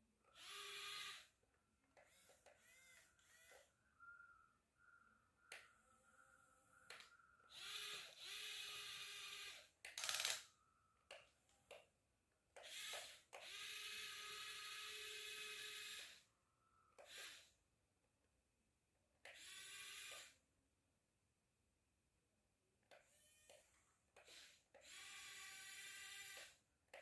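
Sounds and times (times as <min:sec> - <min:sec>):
small electric gear motors whirring: 0:00.3 - 0:01.4, 0:02.0 - 0:03.7, 0:06.9 - 0:10.4, 0:12.6 - 0:16.3, 0:17.0 - 0:17.6, 0:19.2 - 0:20.4, 0:22.9 - 0:27.0.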